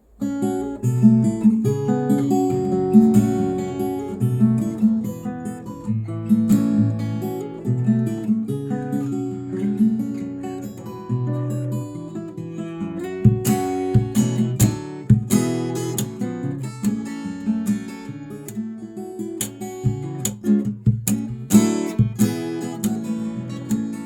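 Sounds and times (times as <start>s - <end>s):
fingerstyle acoustic guitar: 0.0s - 24.0s
percussive slaps on guitar: 0.1s - 5.8s, 13.0s - 18.7s, 19.3s - 24.0s.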